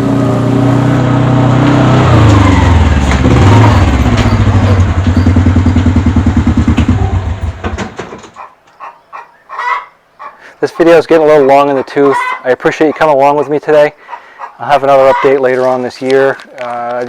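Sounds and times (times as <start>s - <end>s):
engine running and shutting off: 0.0s - 8.4s.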